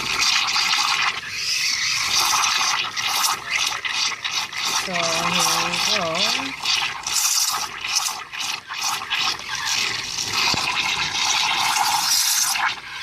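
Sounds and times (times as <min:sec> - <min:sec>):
steam wand hissing into milk: 0:00.0 - 0:13.0.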